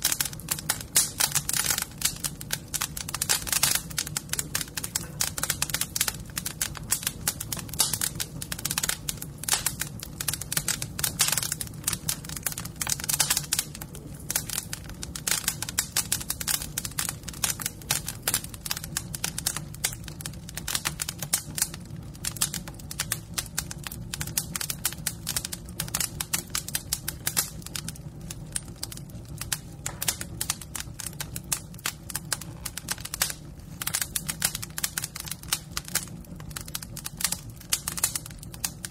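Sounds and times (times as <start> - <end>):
fire crackling: 0.0 - 38.9.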